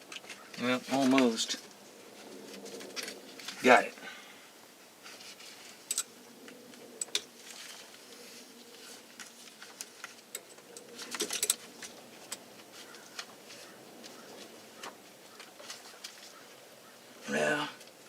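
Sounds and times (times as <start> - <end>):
parts clicking and rattling: 5.6 - 8.2, 9.0 - 16.4.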